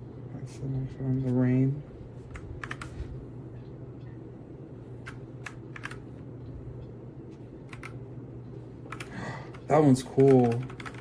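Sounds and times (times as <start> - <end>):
steady low hum: 0.0 - 11.0
mechanical keyboard keystrokes: 2.6 - 2.9, 5.1 - 6.0, 7.7 - 8.0, 8.9 - 9.1, 10.1 - 11.0.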